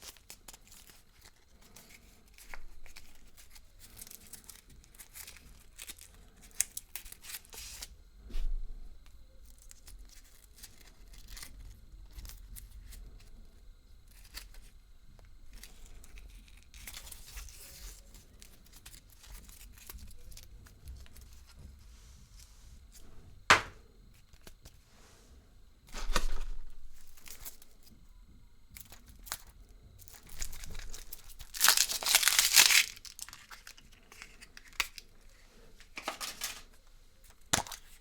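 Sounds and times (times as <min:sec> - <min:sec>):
sharp knock: 0:23.5 - 0:23.8
wrapper tearing and crinkling: 0:30.1 - 0:35.0, 0:35.9 - 0:36.6, 0:37.5 - 0:38.0.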